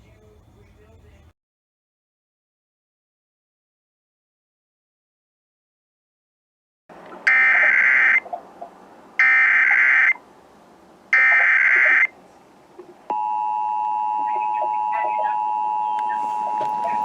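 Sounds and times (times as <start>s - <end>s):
two-tone attention signal: 13.1s - 17.0s.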